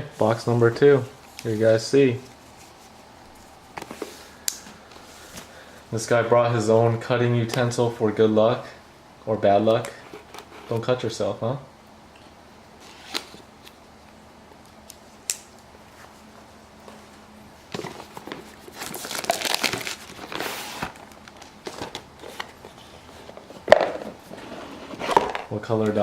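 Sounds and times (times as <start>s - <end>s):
shrink wrap crinkling and tearing: 18.0s - 22.6s.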